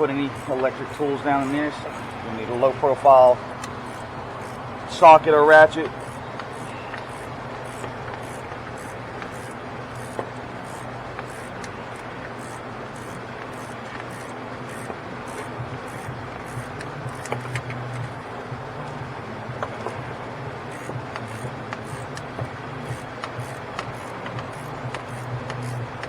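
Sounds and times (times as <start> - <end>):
fans humming: 0.0 - 26.0
faint metallic wrench clicks: 5.9 - 18.1, 20.7 - 26.0.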